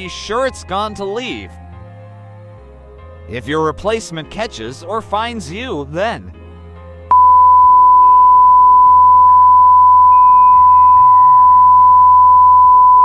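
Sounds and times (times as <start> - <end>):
faint background music: 0.0 - 7.1
censor bleep tone: 7.1 - 13.0.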